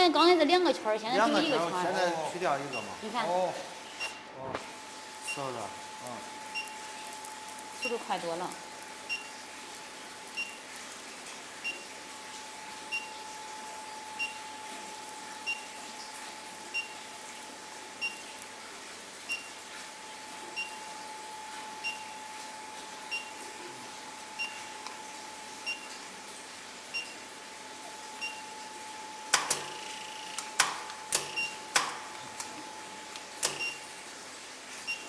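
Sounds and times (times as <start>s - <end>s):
induction heater humming: 0.0s - 35.0s
short beeps: 20.6s - 20.8s, 31.2s - 31.6s.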